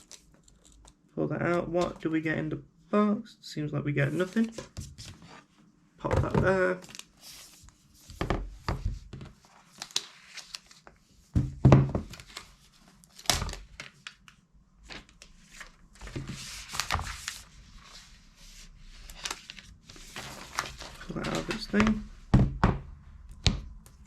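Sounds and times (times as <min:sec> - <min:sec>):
wrapping rustling and crinkling: 0:00.0 - 0:01.0, 0:06.4 - 0:11.0, 0:12.0 - 0:22.1.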